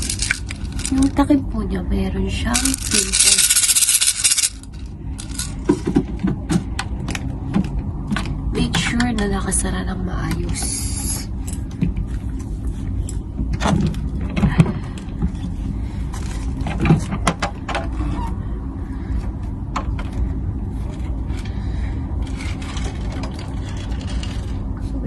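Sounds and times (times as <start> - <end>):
steady low hum: 0.0 - 25.0
plastic parts knocking and clicking: 5.2 - 9.3.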